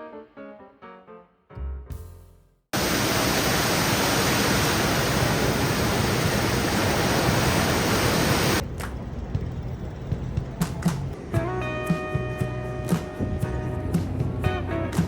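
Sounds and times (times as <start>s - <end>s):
loud rushing noise: 2.8s - 8.8s.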